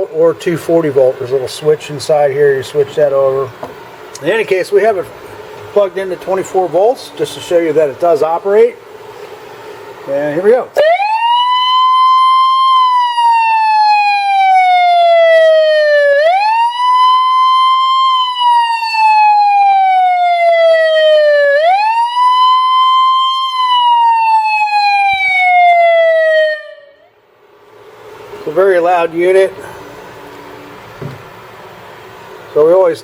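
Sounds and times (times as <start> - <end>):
electronic siren sweeping: 10.8 - 27.2.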